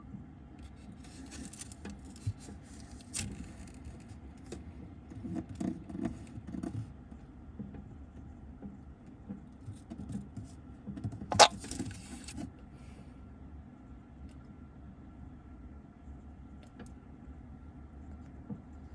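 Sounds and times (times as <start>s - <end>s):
frog feeding clicks and knocks: 11.3s - 11.8s.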